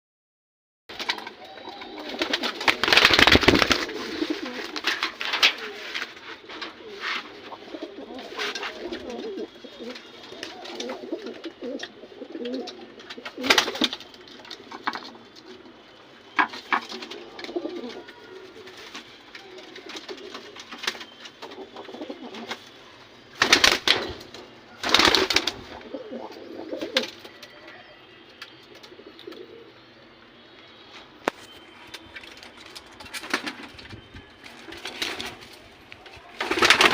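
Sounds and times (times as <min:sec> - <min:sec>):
pigeons cooing: 0:00.9 - 0:30.0.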